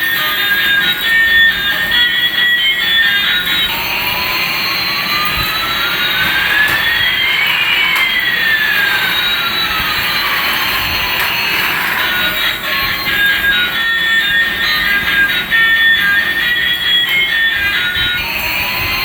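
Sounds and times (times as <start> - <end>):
whistling tones: 0.0 - 19.0.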